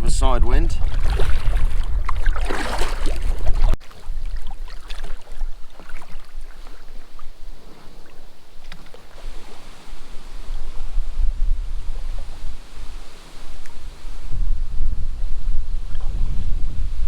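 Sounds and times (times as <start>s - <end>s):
wind buffeting microphone: 0.0s - 17.0s
water lapping against raft: 0.5s - 17.0s
paddle strokes splashing: 0.7s - 11.2s
small water drips: 0.8s - 9.2s.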